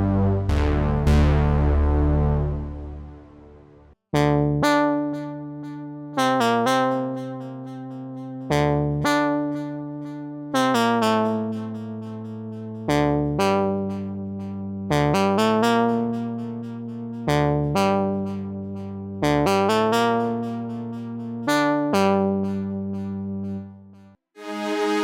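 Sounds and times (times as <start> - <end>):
synthesizer notes: 0.0 - 13.9, 24.4 - 25.0.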